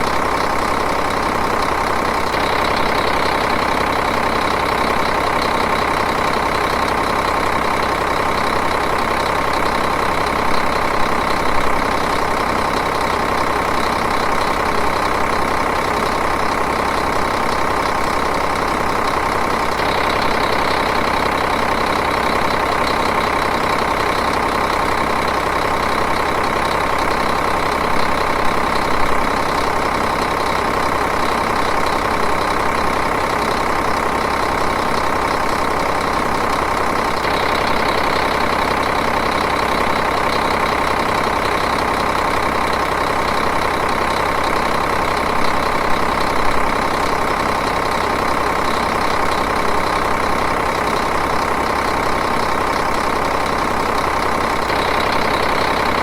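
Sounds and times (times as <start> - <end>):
diesel engine idling: 0.0 - 56.0
engine knocks: 0.0 - 56.0.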